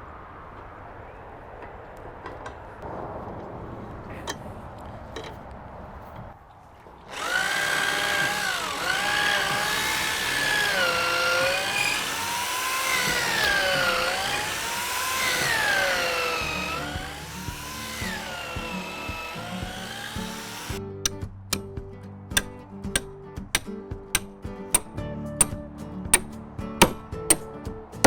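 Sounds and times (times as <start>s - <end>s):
power drill boring into wood: 7.1s - 20.8s.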